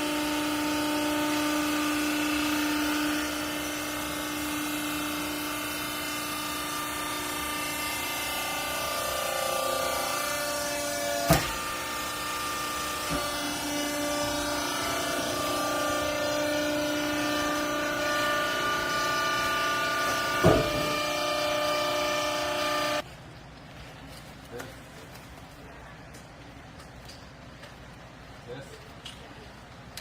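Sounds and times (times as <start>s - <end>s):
hydraulic pump whine: 0.0s - 23.0s
sharp knocks: 20.0s - 21.2s.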